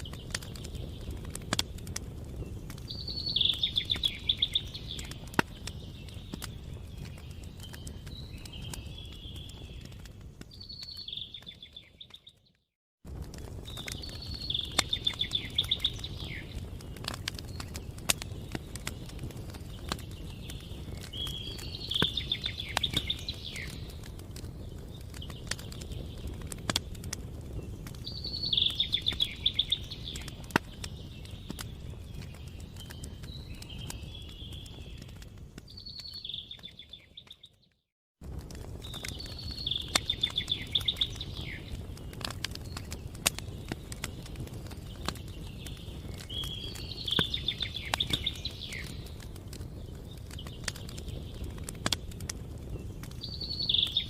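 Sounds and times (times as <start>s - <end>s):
campfire crackling and popping: 0.0s - 54.0s.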